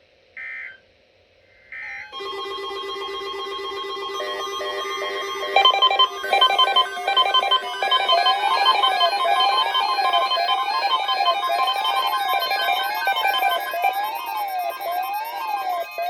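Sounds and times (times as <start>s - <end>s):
steady electronic tone: 2.1s - 14.9s
fast synth notes: 2.1s - 16.0s
rising and falling synth sweep: 2.2s - 16.0s.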